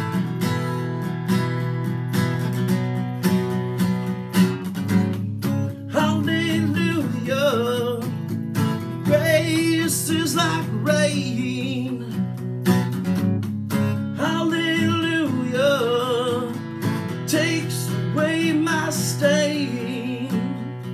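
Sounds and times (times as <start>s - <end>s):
acoustic guitar strumming: 0.0s - 20.9s
person singing: 5.9s - 8.2s, 9.0s - 12.3s, 14.1s - 20.9s.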